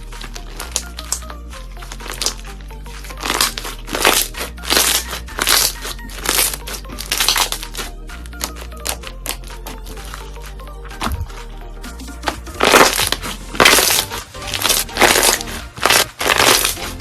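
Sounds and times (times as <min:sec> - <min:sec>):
loud crunches: 0:00.0 - 0:10.4, 0:12.3 - 0:17.0
background music: 0:00.0 - 0:17.0.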